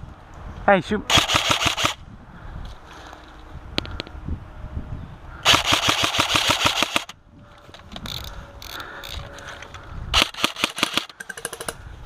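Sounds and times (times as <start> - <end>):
airsoft gun full-auto burst: 1.1 - 2.0, 5.4 - 7.1, 10.2 - 11.1.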